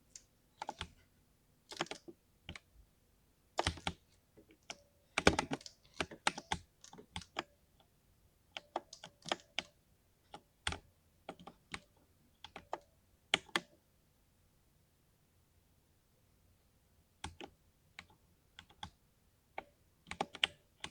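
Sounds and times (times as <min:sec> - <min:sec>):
mechanical keyboard typing: 0:01.7 - 0:02.6, 0:03.6 - 0:04.0, 0:04.6 - 0:07.5, 0:20.1 - 0:20.9.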